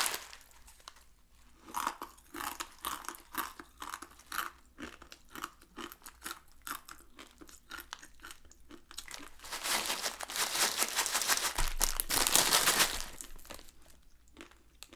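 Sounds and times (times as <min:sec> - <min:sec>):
plastic packet crinkling: 0:00.0 - 0:01.1, 0:08.9 - 0:14.0
dry noodles crunching: 0:00.0 - 0:14.9.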